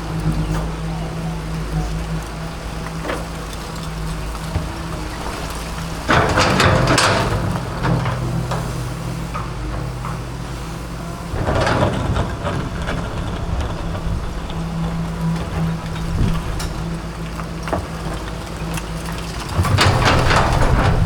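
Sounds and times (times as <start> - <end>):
excavator diesel engine running: 0.0 - 21.0
small knocks: 11.3 - 21.0.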